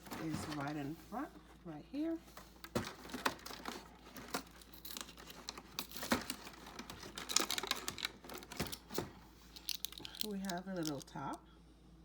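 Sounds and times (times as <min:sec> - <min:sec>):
packaging crinkling: 0:02.6 - 0:11.0.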